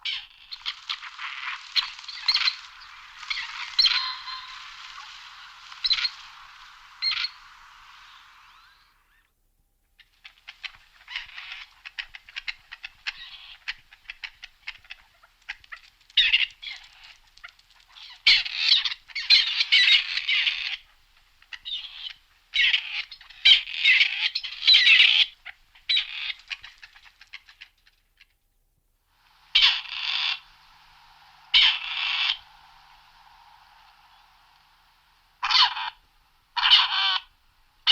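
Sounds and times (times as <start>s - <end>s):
partridge calling: 0.0s - 9.3s, 17.9s - 27.9s, 29.4s - 37.9s.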